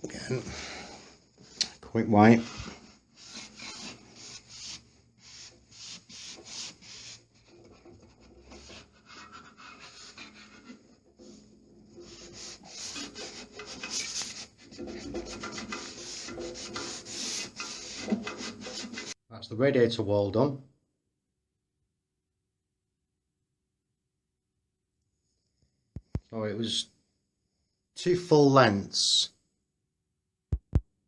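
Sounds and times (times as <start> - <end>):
rubbing strokes over wallpaper: 2.2 - 19.2.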